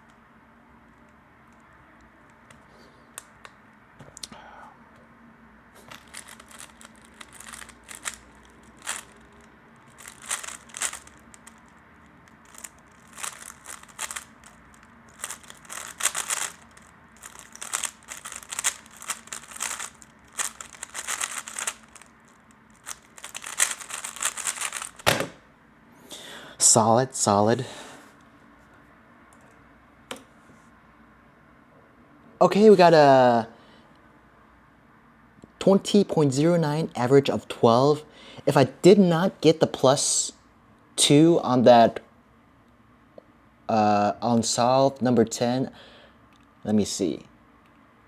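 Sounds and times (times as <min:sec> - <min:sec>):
plastic puzzle cube clicking: 0:06.0 - 0:09.2, 0:09.9 - 0:11.6, 0:12.5 - 0:22.1, 0:22.8 - 0:25.1.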